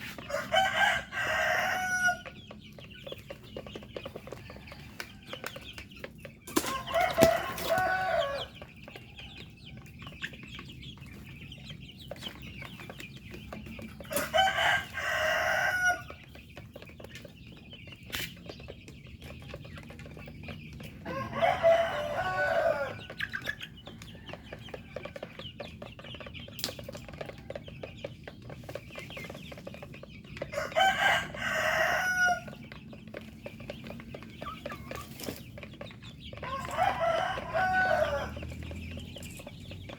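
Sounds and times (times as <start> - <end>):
chickens clucking quietly: 0.0 - 39.9
rooster crowing: 0.3 - 2.2, 6.7 - 8.5, 21.1 - 23.0, 30.6 - 32.6, 36.4 - 38.5.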